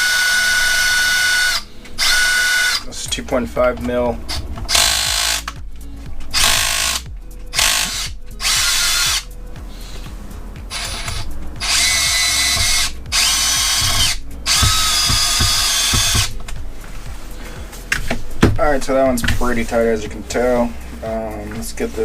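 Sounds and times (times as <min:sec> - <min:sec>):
power driver spinning: 0:00.0 - 0:05.6, 0:06.3 - 0:09.3, 0:10.7 - 0:16.5.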